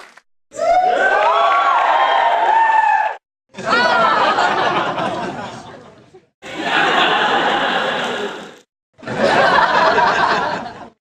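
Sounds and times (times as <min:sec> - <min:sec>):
audience laughing: 0:03.5 - 0:11.0.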